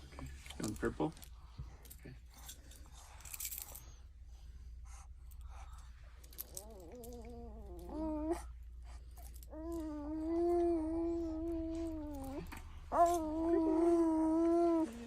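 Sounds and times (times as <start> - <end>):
wavering wailing cries: 9.4 - 15.0.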